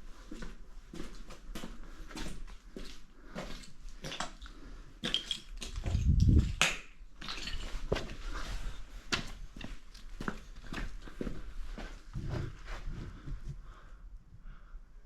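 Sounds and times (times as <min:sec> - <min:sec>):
footsteps crunching on gritty floor: 0:05.0 - 0:13.5.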